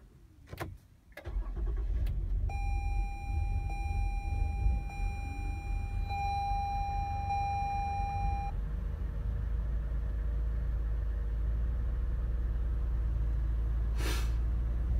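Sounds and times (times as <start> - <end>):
car engine idling: 1.2 - 8.6
high electronic tone: 2.5 - 8.5.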